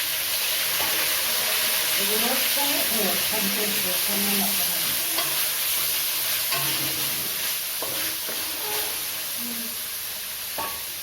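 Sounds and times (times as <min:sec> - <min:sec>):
chicken sizzling in oil: 0:00.0 - 0:11.0
utensil scraping pan: 0:05.2 - 0:09.2.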